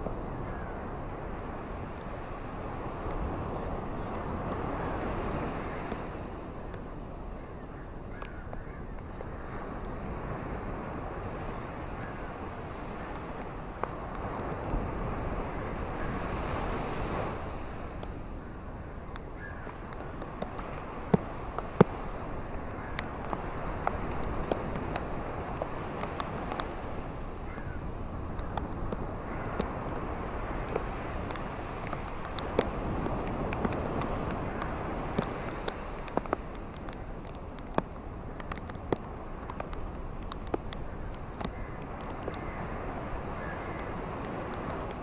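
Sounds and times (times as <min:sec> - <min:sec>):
surf: 0:00.0 - 0:45.0
wind: 0:00.0 - 0:45.0
faint ticks: 0:19.1 - 0:26.8, 0:28.2 - 0:45.0
steady rain: 0:19.1 - 0:27.4, 0:28.3 - 0:45.0.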